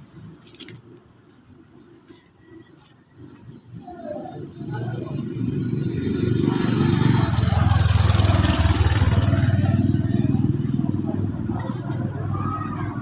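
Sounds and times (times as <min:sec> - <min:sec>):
engine running: 0:04.2 - 0:13.0.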